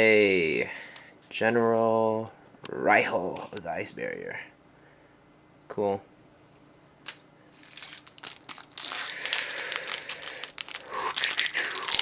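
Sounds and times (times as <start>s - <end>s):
foil wrapper crinkling: 7.6s - 12.0s.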